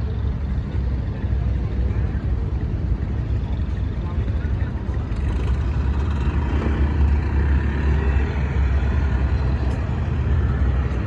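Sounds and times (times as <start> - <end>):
diesel engine rumbling: 0.0 - 11.0.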